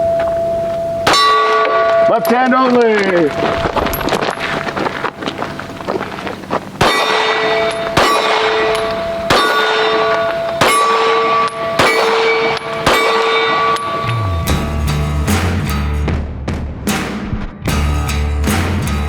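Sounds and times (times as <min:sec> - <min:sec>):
steel plate ringing: 0:00.0 - 0:04.6, 0:06.8 - 0:16.0
pistol shots: 0:06.8 - 0:14.0.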